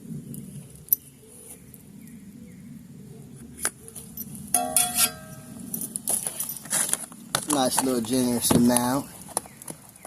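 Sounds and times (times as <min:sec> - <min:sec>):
metal cookware clanking: 0:04.6 - 0:05.6.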